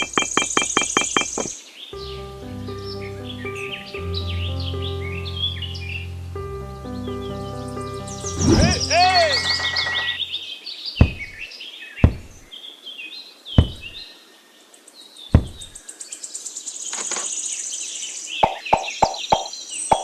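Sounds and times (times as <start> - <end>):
sharp knocks: 0.0 - 1.5, 11.0 - 11.4, 12.0 - 12.4, 13.6 - 14.0, 15.4 - 15.8, 18.4 - 20.0
birds chirping: 0.0 - 20.0.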